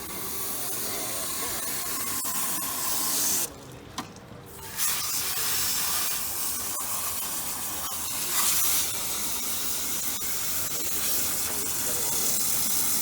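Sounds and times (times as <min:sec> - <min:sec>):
hose water spraying: 0:04.7 - 0:13.0.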